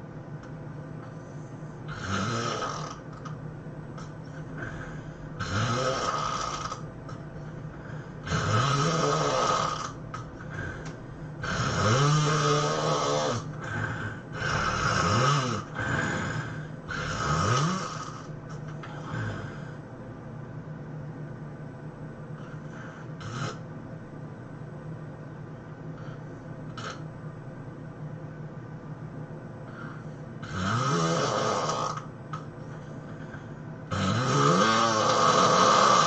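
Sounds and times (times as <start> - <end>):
person snoring heavily: 1.9 - 3.3, 4.3 - 6.9, 7.6 - 19.8, 22.4 - 23.6, 29.7 - 32.1, 33.0 - 36.0.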